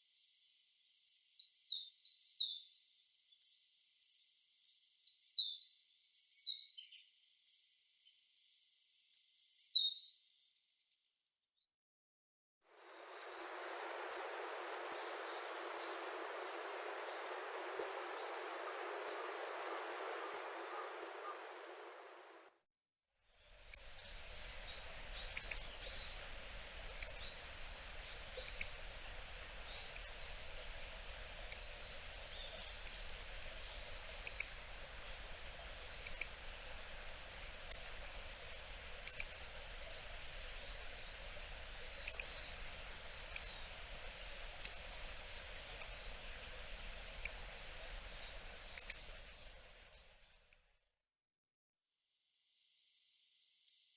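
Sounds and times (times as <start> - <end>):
soft background hiss: 12.8 - 22.5, 23.4 - 50.6
bird sharp high call notes: 13.2 - 22.3.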